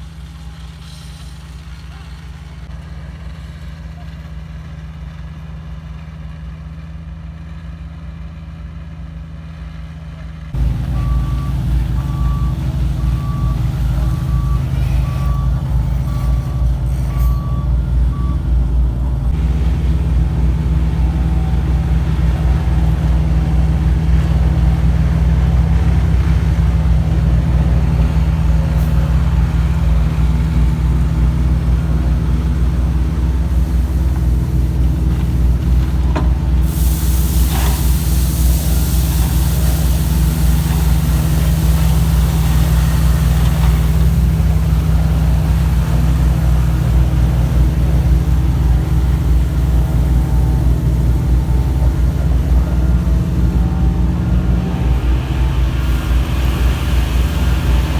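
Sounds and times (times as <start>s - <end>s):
heavy diesel engine running: 0.0s - 57.9s
faint reversing alarm beeping: 10.6s - 19.4s
reversing alarm beeping: 10.6s - 19.4s.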